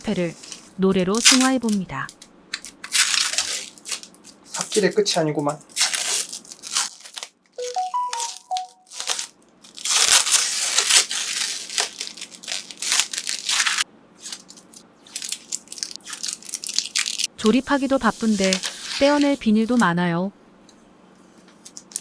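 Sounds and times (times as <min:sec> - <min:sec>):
plastic film peeling and crinkling: 0:00.1 - 0:19.8, 0:21.6 - 0:22.0
short chime: 0:07.6 - 0:08.9.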